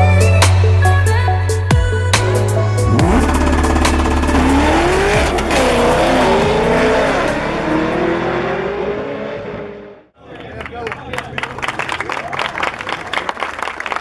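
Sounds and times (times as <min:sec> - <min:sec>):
drag car engine revving: 0:02.8 - 0:10.1.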